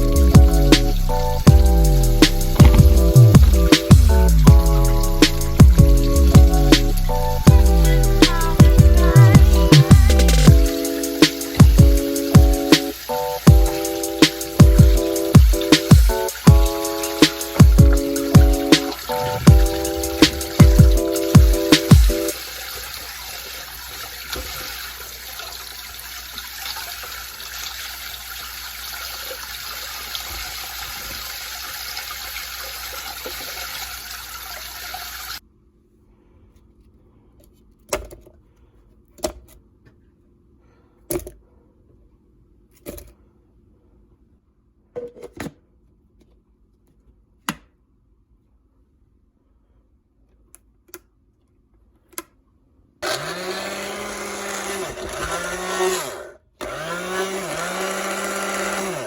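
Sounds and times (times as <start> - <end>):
water running from a tap: 0.0 - 35.4.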